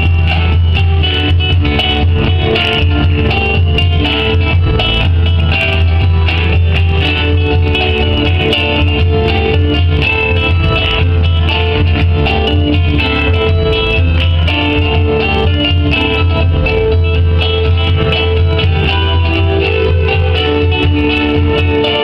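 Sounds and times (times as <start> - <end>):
guitar plucked and strummed: 0.0 - 22.0
low bass tone: 0.0 - 22.0.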